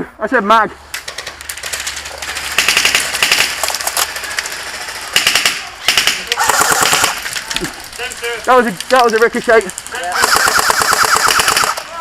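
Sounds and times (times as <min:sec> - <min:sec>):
airsoft gun full-auto firing: 0:02.5 - 0:04.3, 0:05.1 - 0:07.2, 0:10.1 - 0:11.9.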